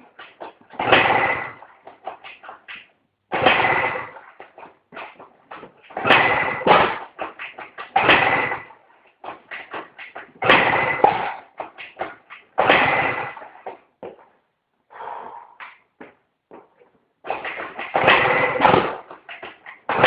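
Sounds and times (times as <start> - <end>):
scooter engine cranking: 0.2 - 2.4, 3.3 - 4.4, 5.0 - 13.6, 17.3 - 20.0.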